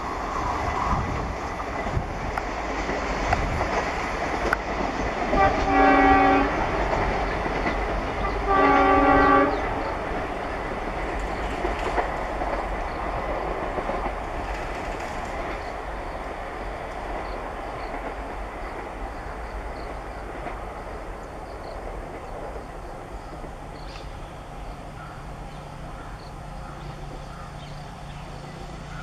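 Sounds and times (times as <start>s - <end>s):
train running on rails: 0.0s - 29.0s
locomotive horn blasts: 5.3s - 6.7s, 8.2s - 9.7s.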